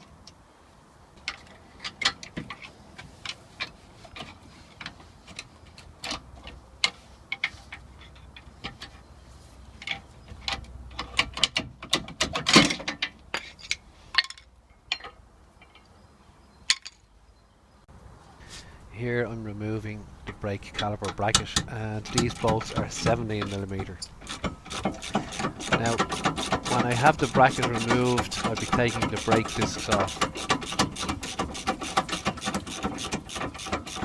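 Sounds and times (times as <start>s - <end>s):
ratchet clicking: 21.5s - 34.0s.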